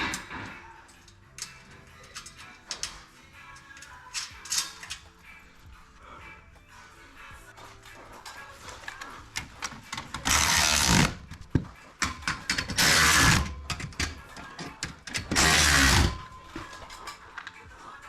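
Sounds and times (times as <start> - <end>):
handling clicks and knocks: 11.3 - 12.8.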